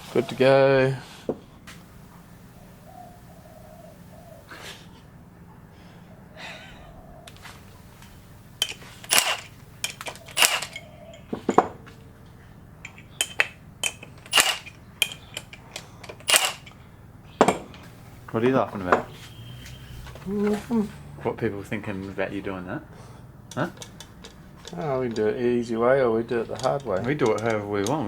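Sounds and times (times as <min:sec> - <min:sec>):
metal tools clinking: 0:08.0 - 0:12.2, 0:12.8 - 0:19.4, 0:23.5 - 0:28.0.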